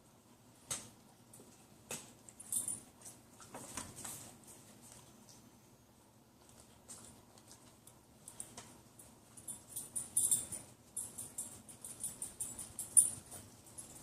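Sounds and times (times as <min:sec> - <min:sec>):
puppy chewing: 0:06.4 - 0:14.0.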